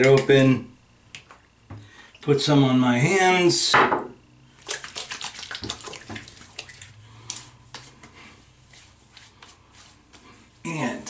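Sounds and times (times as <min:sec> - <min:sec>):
wet hands patting face: 0:04.6 - 0:10.3.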